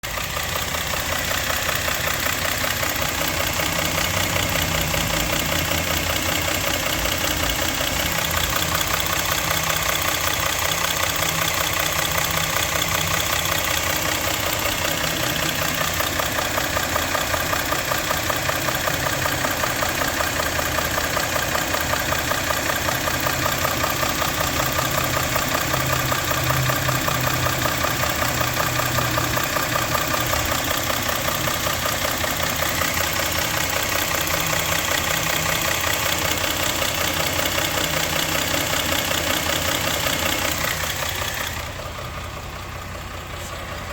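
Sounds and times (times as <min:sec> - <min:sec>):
engine idling with rhythmic knock: 0:00.0 - 0:43.9.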